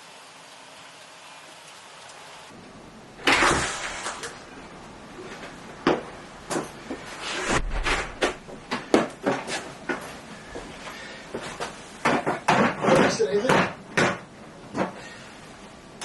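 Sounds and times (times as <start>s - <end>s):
water pouring hiss: 3.4s - 4.4s.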